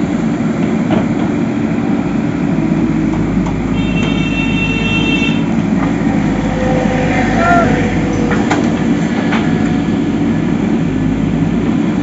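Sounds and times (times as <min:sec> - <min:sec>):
heavy machine engine running: 0:00.0 - 0:12.0
high whining tone: 0:05.2 - 0:10.7.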